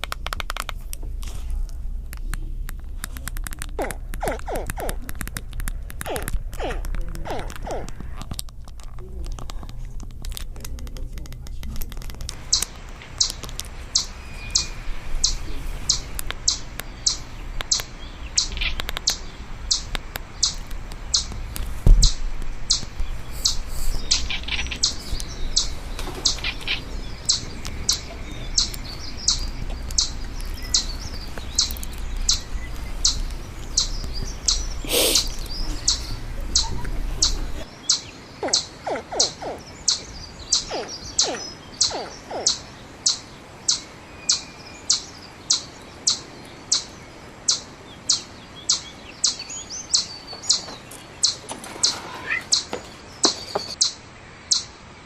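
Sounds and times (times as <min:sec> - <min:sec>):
steady low hum: 0:00.0 - 0:37.8
small bird chirping: 0:09.0 - 0:54.8.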